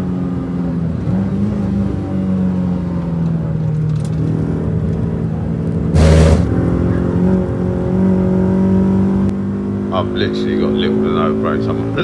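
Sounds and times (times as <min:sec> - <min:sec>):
car engine from inside: 0:05.6 - 0:09.3
loud rushing thump: 0:06.0 - 0:06.7.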